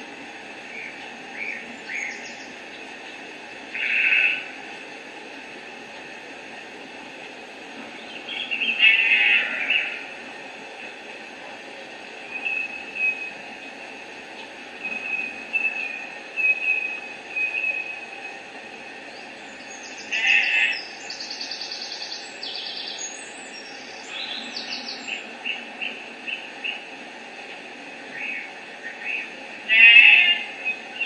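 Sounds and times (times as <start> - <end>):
steady hiss: 0.0 - 31.0
recorded birdsong through small speaker: 0.6 - 4.3, 7.8 - 31.0.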